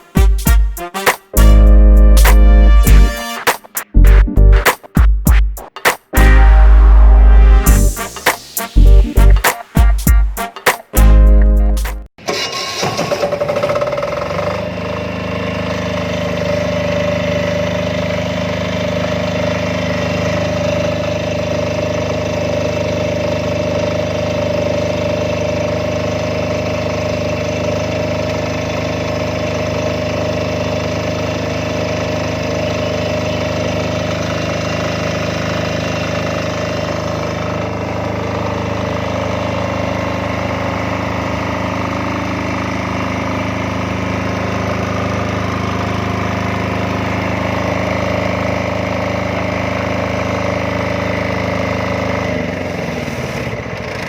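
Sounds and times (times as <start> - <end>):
diesel generator running: 1.4 - 3.1, 3.9 - 4.7, 6.2 - 9.4, 11.0 - 54.0
steady whine: 6.2 - 10.4.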